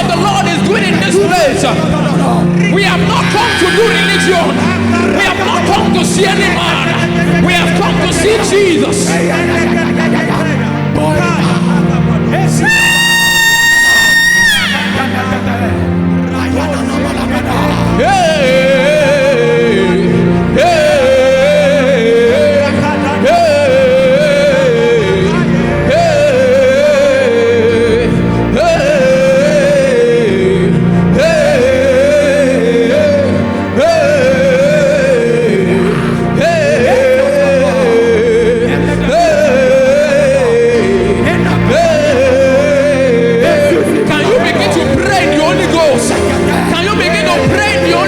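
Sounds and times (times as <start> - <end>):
sustained low chords: 0.0 - 12.6
wordless sung chant: 0.0 - 48.0.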